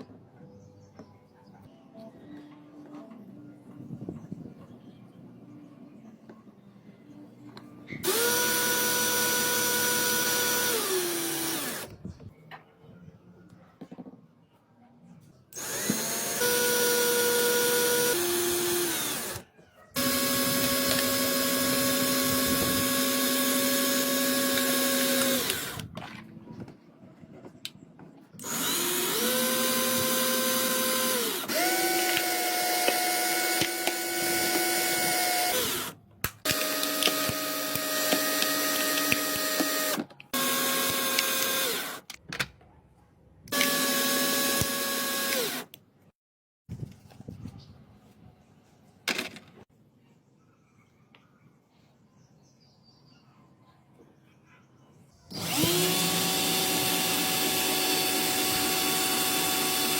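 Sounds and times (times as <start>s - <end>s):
electric power tool motor whining: 8.0s - 12.0s, 15.6s - 19.4s, 20.0s - 25.9s, 28.4s - 42.2s, 43.5s - 45.7s, 55.3s - 59.9s.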